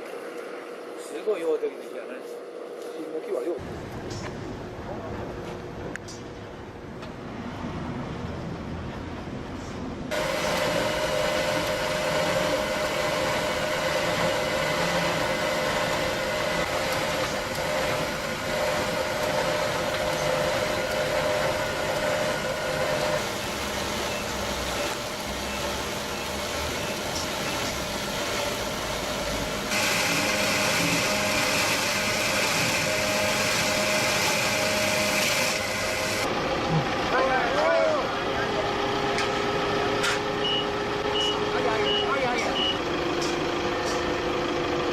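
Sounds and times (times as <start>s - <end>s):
heavy machinery whining: 10.1s - 44.9s.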